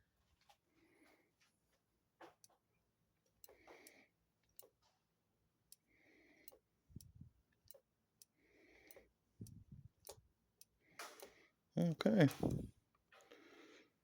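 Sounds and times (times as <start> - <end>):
faint clicks and ticks: 2.2 - 11.6.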